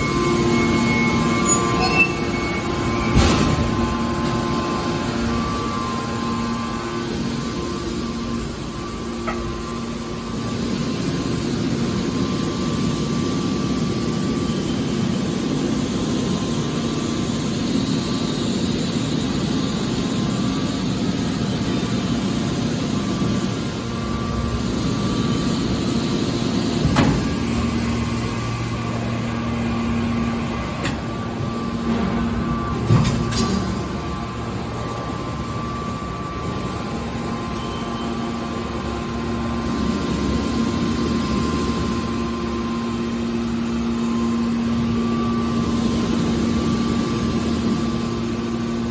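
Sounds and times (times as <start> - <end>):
baler machine hum: 0.0 - 48.9.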